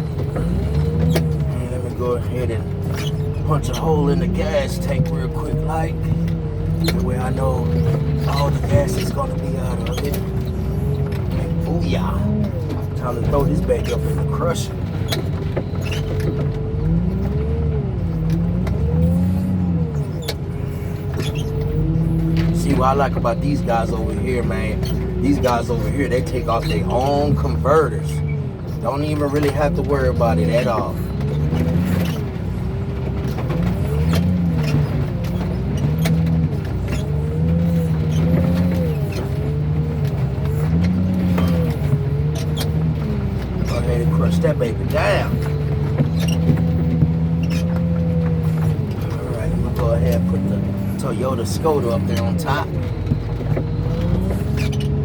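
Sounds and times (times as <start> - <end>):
forklift engine revving: 0.0 - 55.0.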